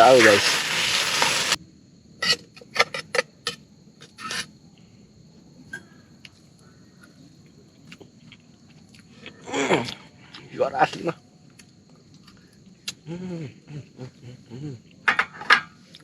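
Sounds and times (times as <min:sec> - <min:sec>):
frying sizzle: 0:00.0 - 0:01.6
metal utensil scraping pan: 0:00.0 - 0:01.6, 0:02.2 - 0:03.1, 0:04.1 - 0:04.5.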